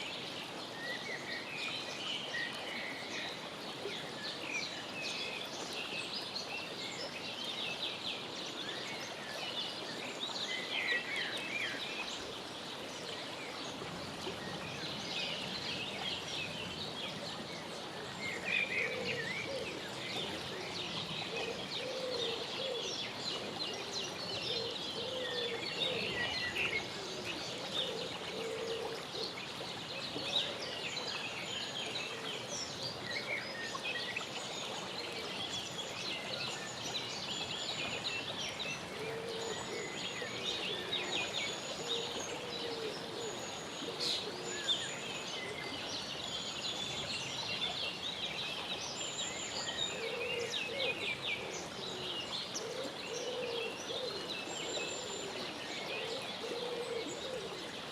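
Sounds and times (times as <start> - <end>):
steady outdoor hiss: 0.0 - 57.9
birds chirping and twittering: 13.6 - 57.9.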